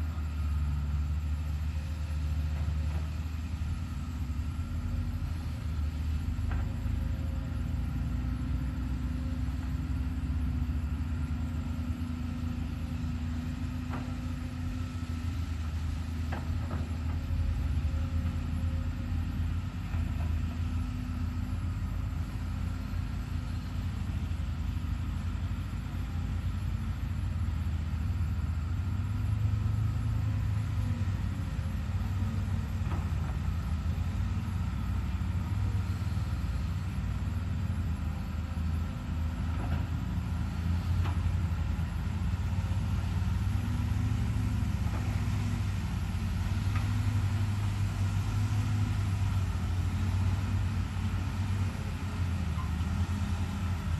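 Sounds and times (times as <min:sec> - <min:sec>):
diesel engine droning: 0:00.0 - 0:53.9.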